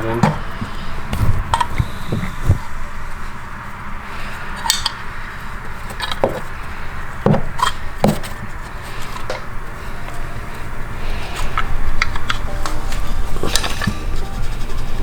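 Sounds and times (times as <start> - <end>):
steady low hum: 0.0 - 4.6.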